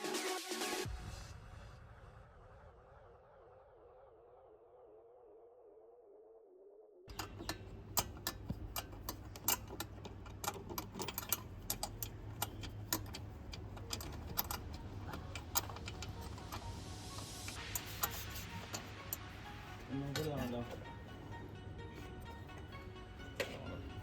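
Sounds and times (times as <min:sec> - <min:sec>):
diesel engine idling: 0:07.1 - 0:24.0.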